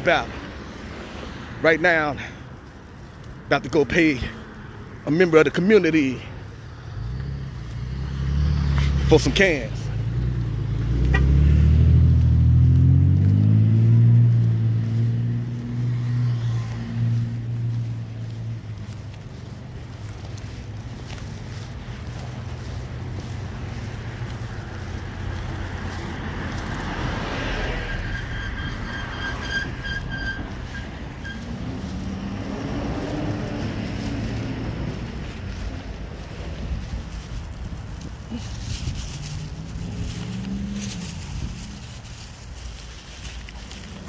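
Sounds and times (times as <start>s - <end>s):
car engine accelerating: 6.8s - 44.0s
short high-pitched beeps: 28.0s - 31.5s.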